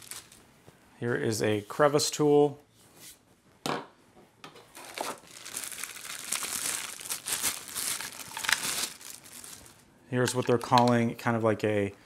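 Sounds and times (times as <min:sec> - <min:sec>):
packaging rustling: 0:00.0 - 0:00.4, 0:04.7 - 0:11.0.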